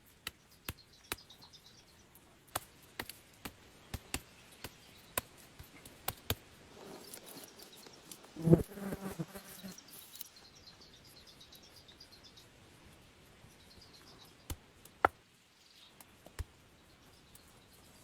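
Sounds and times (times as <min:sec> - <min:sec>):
flying insect buzzing: 0:08.2 - 0:10.1.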